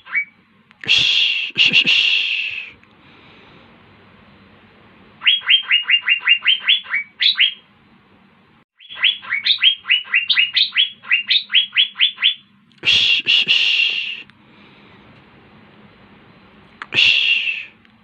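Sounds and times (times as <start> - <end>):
bird whistling song: 0.0 - 0.4, 5.2 - 7.7, 8.8 - 12.5, 17.0 - 17.8
harsh raspy bird call: 0.0 - 2.8, 5.2 - 7.7, 8.8 - 14.3, 16.9 - 17.8.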